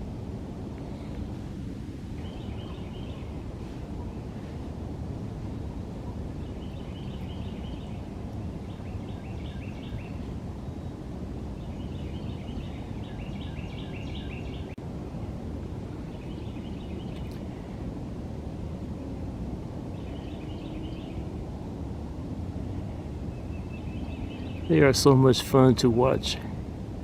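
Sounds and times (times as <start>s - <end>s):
low outdoor rumble: 0.0s - 27.0s
songbird singing: 2.1s - 4.4s, 5.7s - 14.8s, 15.8s - 17.6s, 19.1s - 21.7s, 22.8s - 26.4s.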